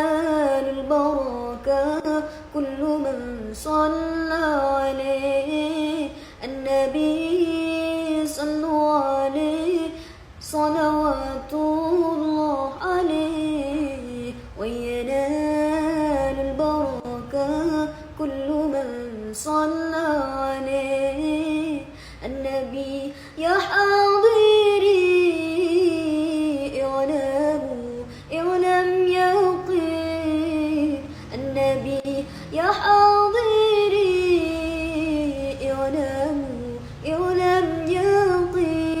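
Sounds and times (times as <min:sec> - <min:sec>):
singer breathing: 0:06.1 - 0:06.4, 0:09.9 - 0:10.4, 0:21.8 - 0:22.3, 0:23.1 - 0:23.4, 0:28.0 - 0:28.3, 0:31.0 - 0:31.4, 0:32.2 - 0:32.6.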